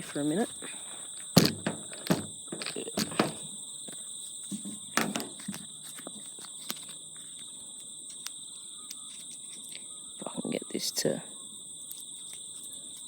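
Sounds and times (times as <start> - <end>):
sharp handling knocks and clicks: 1.2 - 7.0.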